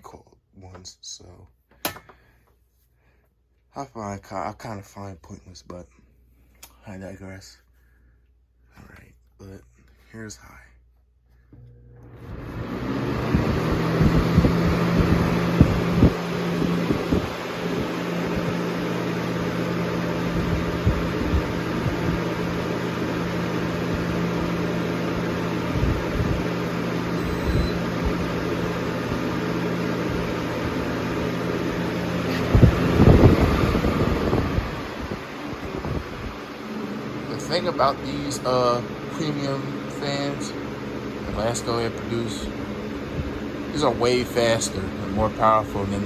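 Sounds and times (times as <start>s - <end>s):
box fan rushing air: 12.0s - 46.0s
air thumping microphone: 13.2s - 18.7s, 31.9s - 37.3s, 42.5s - 43.7s.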